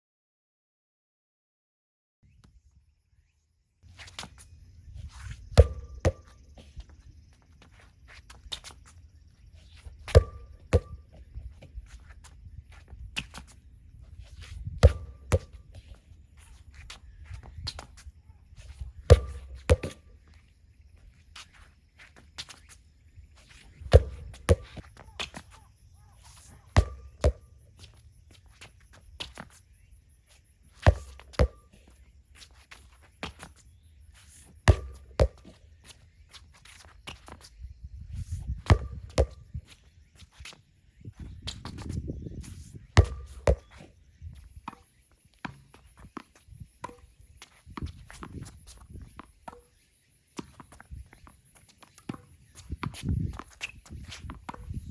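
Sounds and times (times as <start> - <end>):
footsteps on tennis court: 3.8 - 29.7, 30.3 - 37.6, 38.3 - 49.8, 50.4 - 54.9
racket hitting ball: 5.6 - 6.4, 10.2 - 11.0, 14.8 - 15.6, 19.1 - 20.1, 23.9 - 24.8, 26.8 - 27.4, 34.7 - 35.5, 43.0 - 43.7.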